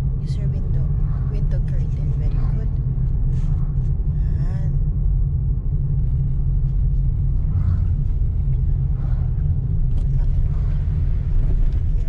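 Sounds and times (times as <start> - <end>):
car rumbling on the move: 0.0 - 12.0.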